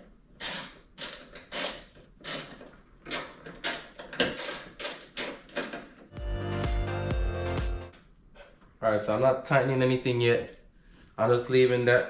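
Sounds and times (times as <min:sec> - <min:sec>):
background music with bass line: 0:06.1 - 0:07.9.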